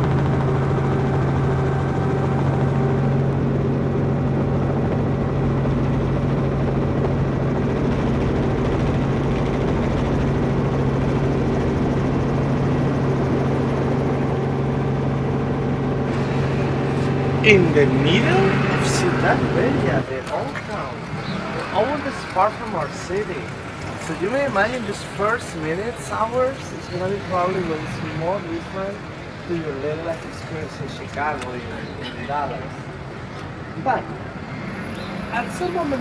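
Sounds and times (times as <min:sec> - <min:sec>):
engine and rotor drone in cabin: 0:00.0 - 0:20.0.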